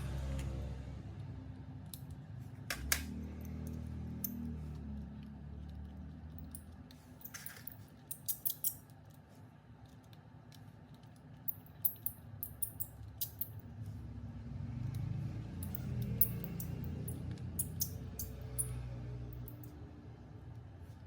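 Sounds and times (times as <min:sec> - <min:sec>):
clicks and scrapes of small parts: 0:01.9 - 0:13.8, 0:15.6 - 0:18.7.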